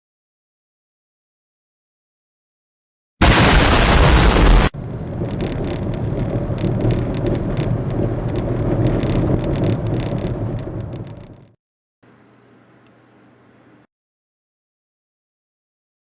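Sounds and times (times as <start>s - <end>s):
road and tyre rumble in car cabin: 4.8s - 11.6s.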